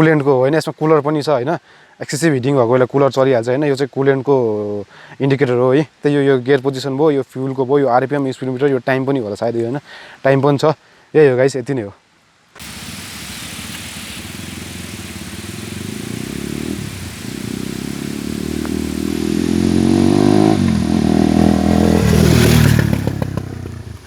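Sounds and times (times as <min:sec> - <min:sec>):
motorcycle engine accelerating: 0:12.6 - 0:24.0.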